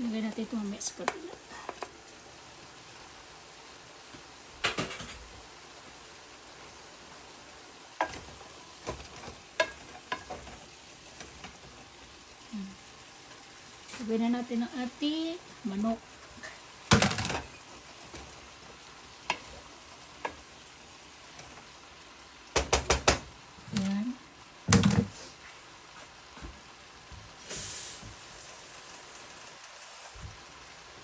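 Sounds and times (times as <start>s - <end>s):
chicken sizzling in a pan: 0.0s - 31.0s
metal utensil knocking on pan: 22.6s - 23.3s.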